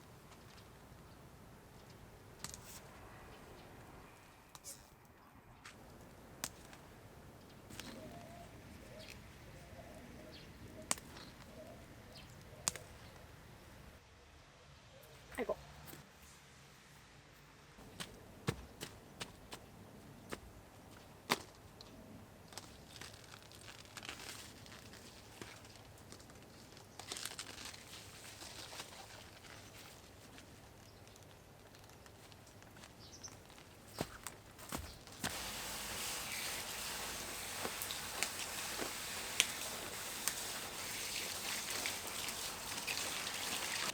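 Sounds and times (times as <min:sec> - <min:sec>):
faint rustling and crinkling: 0:20.3 - 0:43.9.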